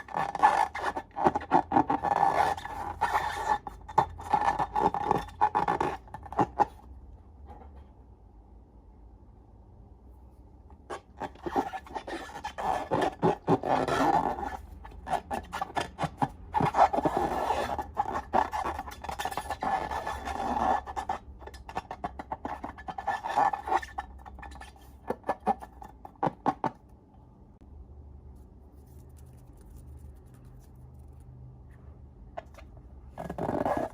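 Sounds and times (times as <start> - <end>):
slime scraping and rubbing: 0.0 - 6.8, 10.9 - 26.5, 32.4 - 33.9.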